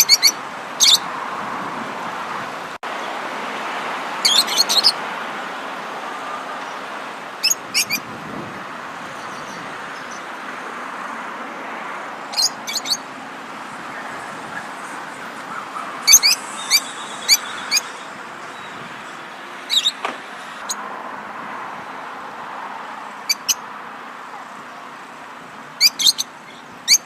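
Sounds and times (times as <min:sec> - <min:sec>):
songbird chirping: 0:04.2 - 0:05.0, 0:12.3 - 0:20.8.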